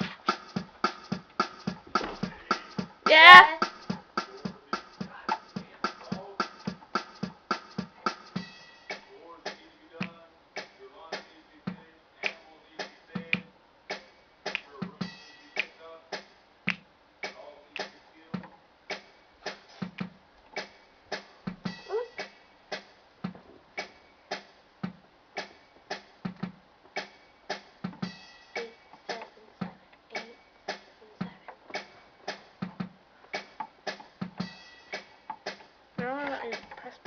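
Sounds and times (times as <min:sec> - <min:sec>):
low kick drum thumps: 0:00.0 - 0:08.5, 0:26.2 - 0:26.6, 0:32.6 - 0:33.0
drum machine beat: 0:00.0 - 0:37.0.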